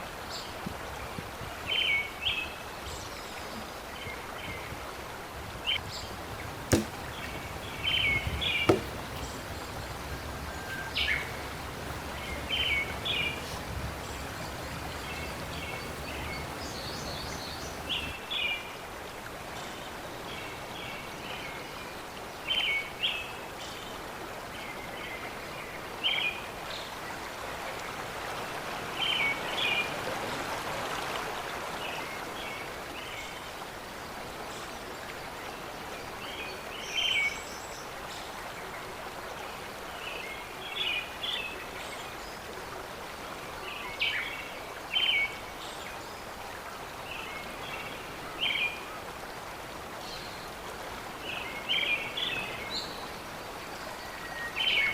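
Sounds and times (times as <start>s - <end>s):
river water rushing: 6.0s - 18.1s
bird short high calls: 6.1s - 18.1s.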